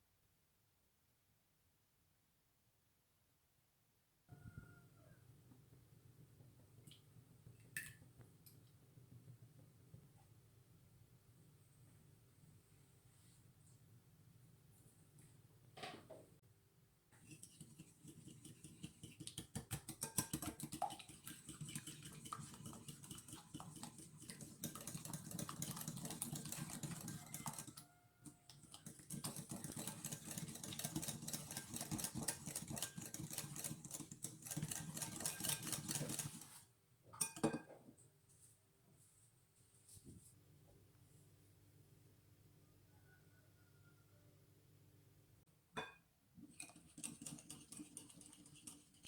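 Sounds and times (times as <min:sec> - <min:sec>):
whisk clicking against bowl: 0:17.2 - 0:36.5, 0:46.5 - 0:49.0.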